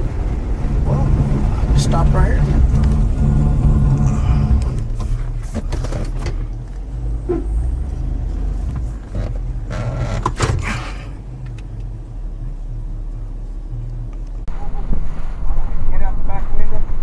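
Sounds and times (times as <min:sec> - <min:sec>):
vehicle engine idling: 0:00.0 - 0:17.0
rustling: 0:14.5 - 0:17.0.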